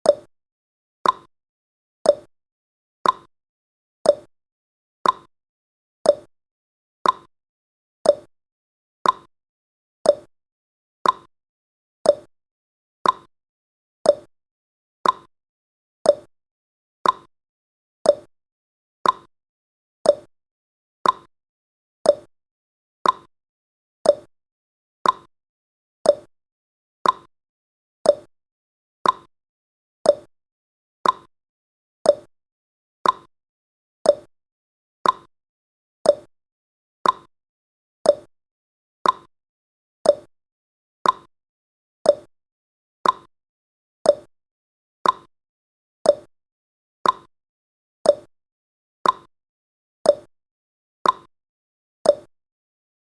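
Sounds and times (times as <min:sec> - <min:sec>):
timer ticking: 0:00.0 - 0:00.3, 0:01.0 - 0:01.3, 0:02.1 - 0:02.3, 0:03.0 - 0:03.3, 0:04.1 - 0:04.3, 0:05.0 - 0:05.3, 0:06.1 - 0:06.3, 0:07.0 - 0:07.3, 0:08.1 - 0:08.3, 0:09.0 - 0:09.3, 0:10.1 - 0:10.3, 0:11.0 - 0:11.3, 0:12.1 - 0:12.3, 0:13.0 - 0:13.3, 0:14.1 - 0:14.3, 0:15.0 - 0:15.3, 0:16.1 - 0:16.3, 0:17.0 - 0:17.3, 0:18.0 - 0:18.3, 0:19.0 - 0:19.3, 0:20.0 - 0:20.3, 0:21.0 - 0:21.3, 0:22.0 - 0:22.3, 0:23.0 - 0:23.3, 0:24.0 - 0:24.3, 0:25.0 - 0:25.3, 0:26.0 - 0:26.3, 0:27.0 - 0:27.3, 0:28.0 - 0:28.3, 0:29.0 - 0:29.3, 0:30.0 - 0:30.3, 0:31.0 - 0:31.3, 0:32.0 - 0:32.3, 0:33.0 - 0:33.3, 0:34.0 - 0:34.3, 0:35.0 - 0:35.3, 0:36.0 - 0:36.3, 0:37.0 - 0:37.3, 0:38.0 - 0:38.3, 0:39.0 - 0:39.3, 0:40.0 - 0:40.3, 0:41.0 - 0:41.3, 0:42.1 - 0:42.3, 0:43.0 - 0:43.3, 0:44.1 - 0:44.3, 0:45.0 - 0:45.3, 0:46.1 - 0:46.3, 0:47.0 - 0:47.3, 0:48.1 - 0:48.3, 0:49.0 - 0:49.3, 0:50.1 - 0:50.3, 0:51.0 - 0:51.3, 0:52.1 - 0:52.3.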